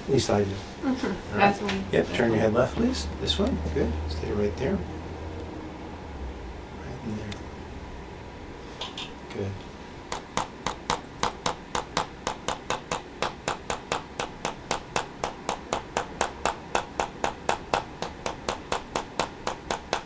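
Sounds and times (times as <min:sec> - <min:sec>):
adjusting instrument clicking taps: 0:10.1 - 0:20.0.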